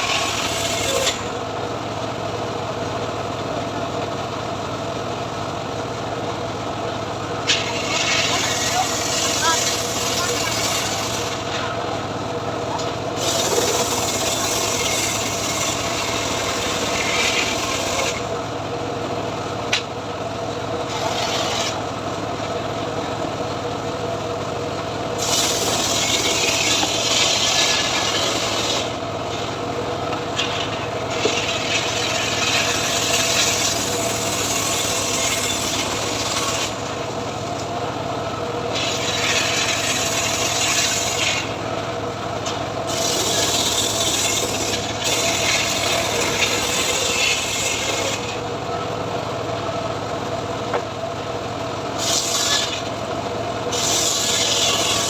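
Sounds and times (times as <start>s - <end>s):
chainsaw cutting log: 0.0s - 1.4s, 7.4s - 11.8s, 12.7s - 18.4s, 20.8s - 21.9s, 25.2s - 37.7s, 38.6s - 41.6s, 42.4s - 48.4s, 51.9s - 55.0s.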